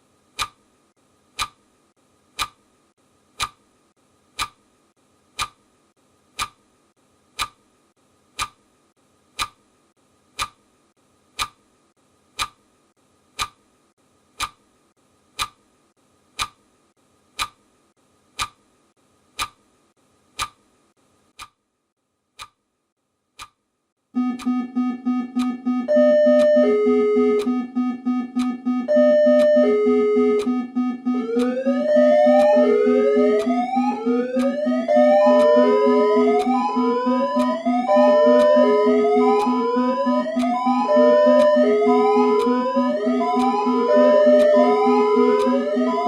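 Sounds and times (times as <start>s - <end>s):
clock ticking: 0.3s - 0.6s, 1.3s - 1.6s, 2.3s - 2.6s, 3.4s - 3.6s, 4.3s - 4.6s, 5.3s - 5.6s, 6.3s - 6.6s, 7.3s - 7.6s, 8.3s - 8.6s, 9.3s - 9.6s, 10.3s - 10.6s, 11.3s - 11.6s, 12.3s - 12.6s, 13.3s - 13.6s, 14.4s - 14.6s, 15.4s - 15.6s, 16.4s - 16.6s, 17.4s - 17.6s, 18.4s - 18.6s, 19.4s - 19.6s, 20.4s - 20.6s, 21.3s - 21.6s, 22.4s - 22.6s, 23.4s - 23.6s, 24.2s - 46.0s.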